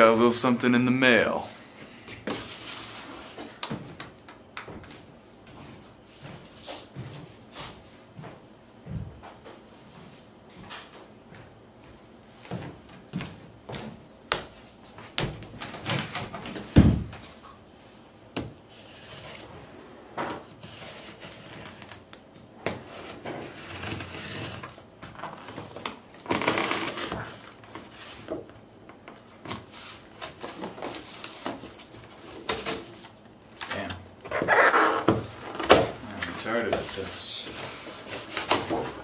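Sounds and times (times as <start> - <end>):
cardboard scraping and rustling: 18.7 - 22.0, 22.7 - 28.5, 29.4 - 39.0.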